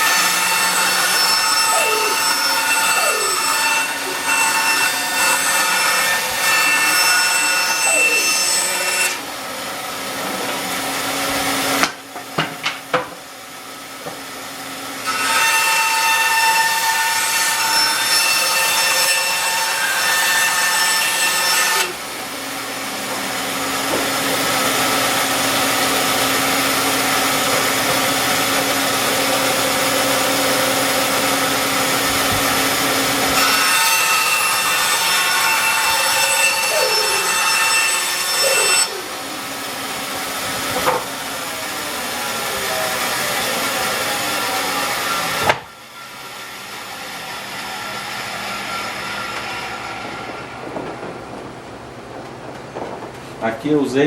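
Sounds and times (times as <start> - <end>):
band saw cutting: 0.0 - 12.0, 13.5 - 50.8
sharp knocks: 50.0 - 53.4.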